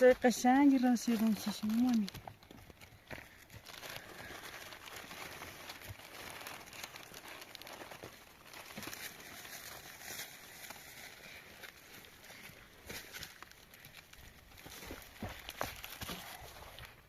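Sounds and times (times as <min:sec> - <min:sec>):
rustling and crinkling: 0:00.0 - 0:17.0.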